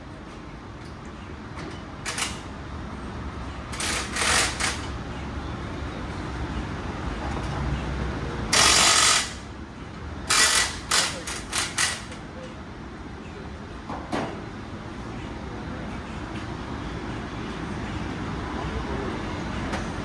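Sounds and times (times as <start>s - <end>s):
pneumatic air tool bursts: 3.8s - 4.8s, 8.5s - 9.5s, 10.3s - 12.1s.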